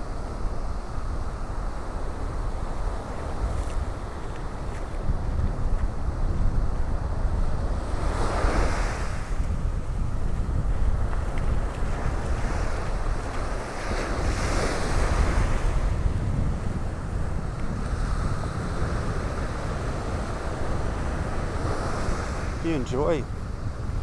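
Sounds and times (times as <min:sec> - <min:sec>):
ocean waves breaking: 0:00.0 - 0:24.0
wind buffeting microphone: 0:00.0 - 0:24.0.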